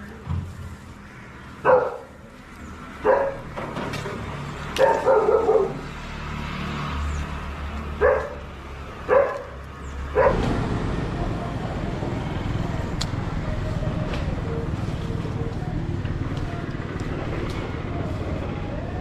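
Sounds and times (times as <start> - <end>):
dog barking: 1.6 - 2.1, 3.0 - 3.4, 4.8 - 5.9, 8.0 - 10.4.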